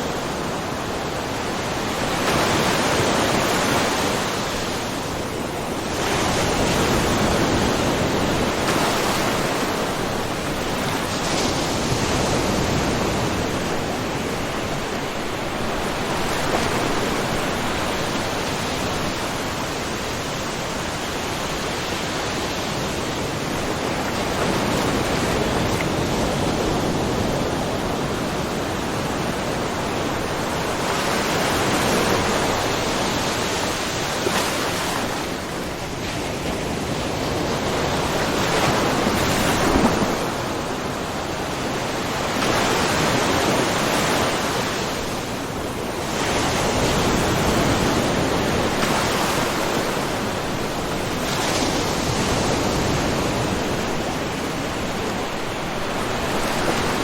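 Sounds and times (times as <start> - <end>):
small waves lapping on shore: 0.0 - 57.0.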